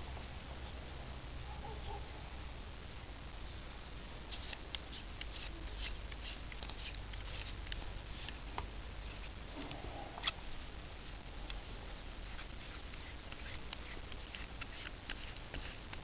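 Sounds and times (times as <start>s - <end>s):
steady low hum: 0.0s - 16.0s
faint scratching: 4.3s - 16.0s.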